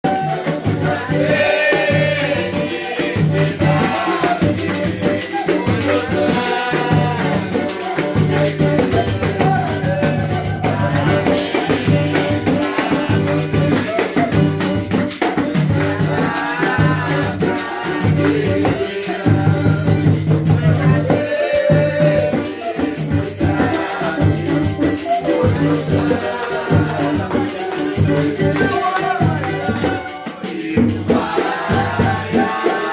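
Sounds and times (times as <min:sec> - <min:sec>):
cuica high squeaking cries: 0:00.1 - 0:19.2, 0:23.7 - 0:30.2
cuica low growling tones: 0:00.2 - 0:15.0.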